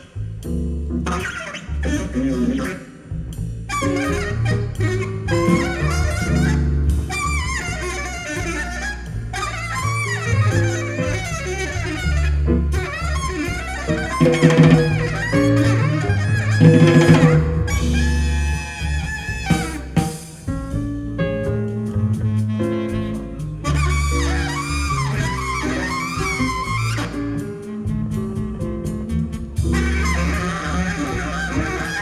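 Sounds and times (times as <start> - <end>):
jazz music with deep bass: 0.0 - 32.0.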